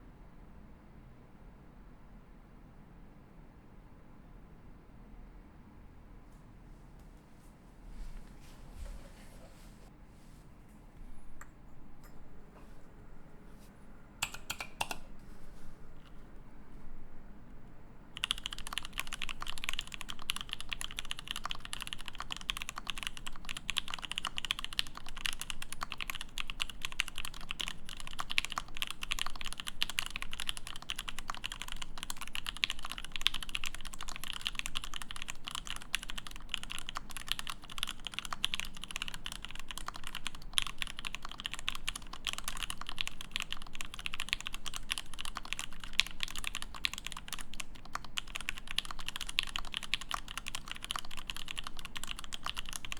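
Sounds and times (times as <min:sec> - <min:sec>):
mechanical keyboard typing: 0:14.2 - 0:15.1, 0:18.2 - 0:52.9.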